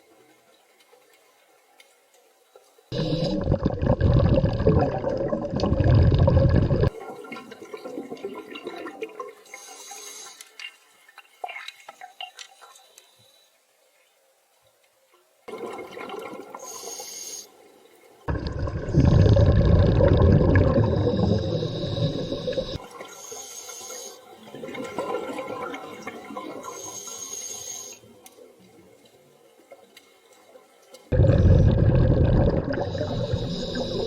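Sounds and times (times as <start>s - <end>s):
exhaled bubbles rushing: 3.0s - 9.0s, 18.3s - 22.8s, 31.1s - 34.0s
regulator hissing inhale: 9.5s - 10.5s, 16.6s - 17.5s, 20.9s - 24.3s, 26.6s - 28.0s, 32.8s - 34.0s.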